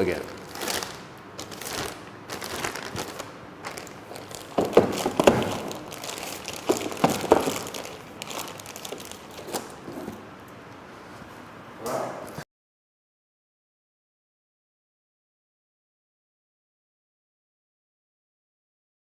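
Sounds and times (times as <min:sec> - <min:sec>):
crinkling rustle: 0:00.0 - 0:10.2.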